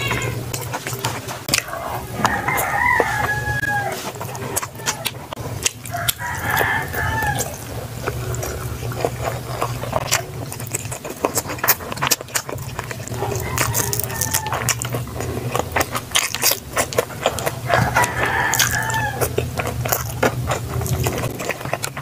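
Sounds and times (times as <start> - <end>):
person eating: 0.0 - 22.0
rooster crowing: 1.7 - 5.0, 5.9 - 7.7, 13.1 - 15.0, 17.6 - 19.4.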